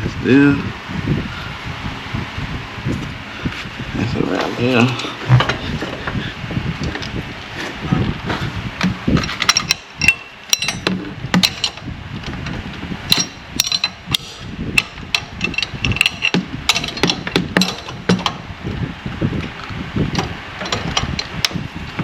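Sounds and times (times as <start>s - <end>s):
metal tool clinks and knocks: 8.8s - 11.8s, 13.1s - 14.2s, 14.8s - 18.4s.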